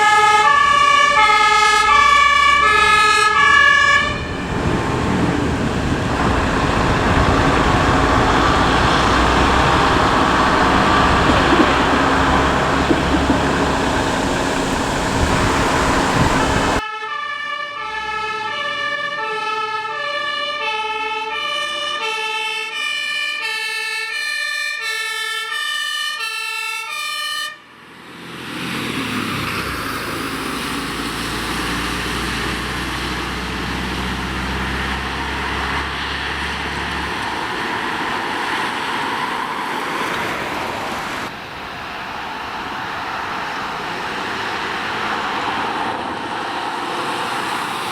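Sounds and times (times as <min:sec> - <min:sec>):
two-tone emergency horn: 0:00.0 - 0:04.4, 0:26.2 - 0:27.6
engine and road noise: 0:00.0 - 0:47.9.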